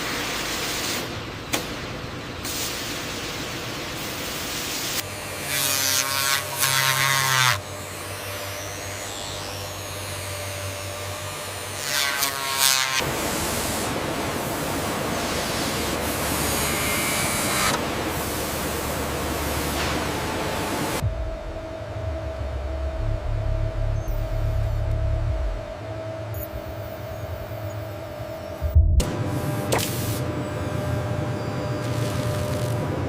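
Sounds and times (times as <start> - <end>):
machine humming: 13.0 - 33.0
loud buzzing whir: 15.9 - 32.8.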